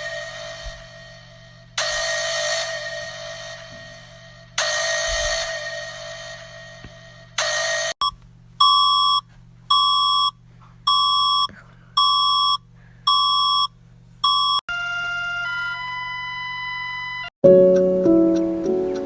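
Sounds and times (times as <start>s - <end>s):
alert alarm beeping: 8.6s - 10.3s, 10.9s - 14.6s.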